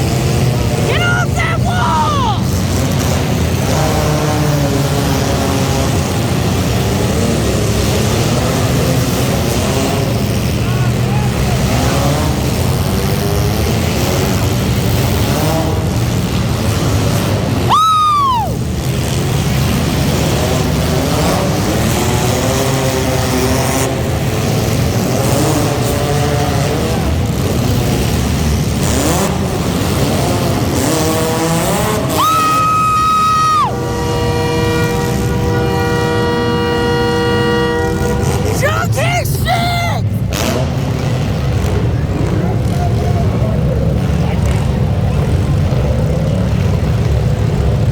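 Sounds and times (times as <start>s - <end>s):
car engines revving: 0.0s - 47.9s
horn sounding: 33.4s - 39.4s.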